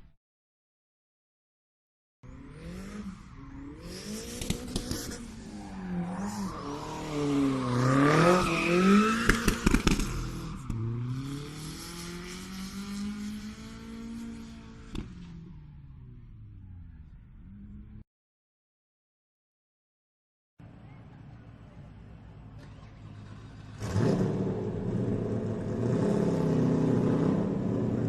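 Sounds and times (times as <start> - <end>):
race car engine revving: 2.3 - 18.0, 22.6 - 28.0
sharp cracks: 9.1 - 10.8.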